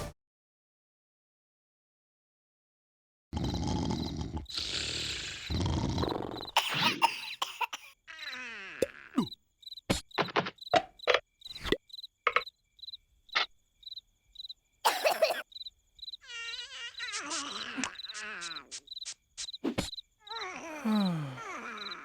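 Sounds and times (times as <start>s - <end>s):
cricket chirps: 3.4s - 22.0s
cartoon vocal squeaks and grunts: 8.0s - 9.4s, 16.2s - 18.9s, 19.6s - 22.0s.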